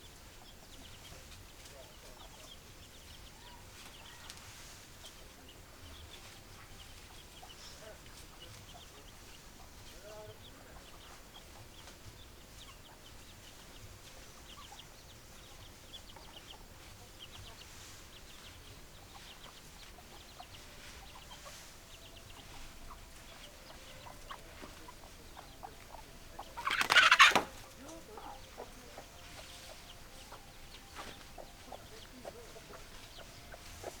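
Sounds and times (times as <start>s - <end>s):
chickens clucking: 0.0s - 34.0s
loud chicken call: 26.6s - 27.6s.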